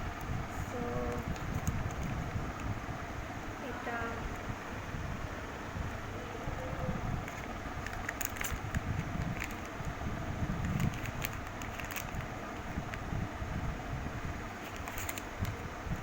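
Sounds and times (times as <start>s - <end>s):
steady low rumble: 0.0s - 16.0s
packaging crackling and clicking: 1.1s - 2.3s, 7.2s - 10.0s, 10.6s - 13.0s, 14.6s - 16.0s.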